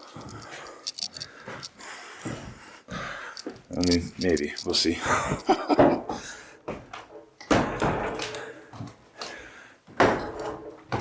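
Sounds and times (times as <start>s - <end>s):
footsteps knocking on wooden stairs: 2.2s - 3.8s.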